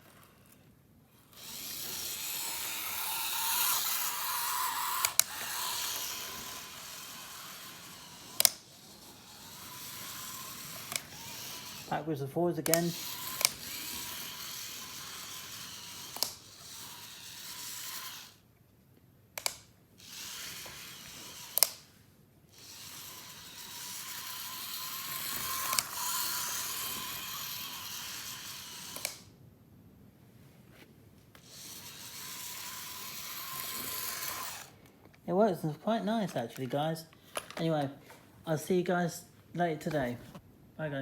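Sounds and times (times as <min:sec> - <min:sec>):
model train motor whirring: 0:00.0 - 0:18.5, 0:19.4 - 0:29.3, 0:31.4 - 0:34.8
sharp clicks: 0:07.4 - 0:12.0, 0:12.6 - 0:18.2, 0:19.4 - 0:21.8, 0:28.7 - 0:29.3.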